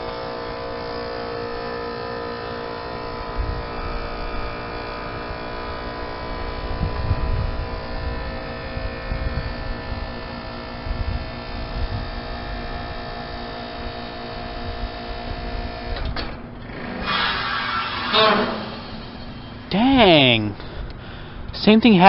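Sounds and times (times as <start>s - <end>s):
heat pump compressor hum: 0.0s - 22.0s
wind on microphone: 3.3s - 4.5s, 6.6s - 13.0s.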